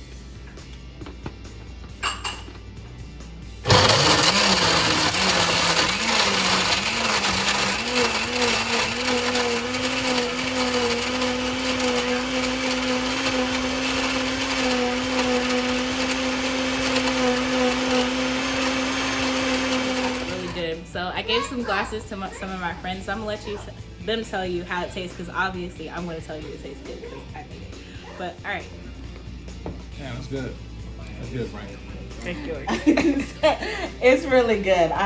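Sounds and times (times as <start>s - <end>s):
blender crushing ice: 3.6s - 20.6s.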